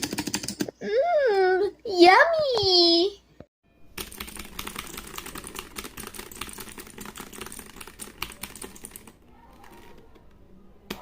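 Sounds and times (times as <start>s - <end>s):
mechanical keyboard typing: 0.0s - 0.7s, 4.0s - 10.3s.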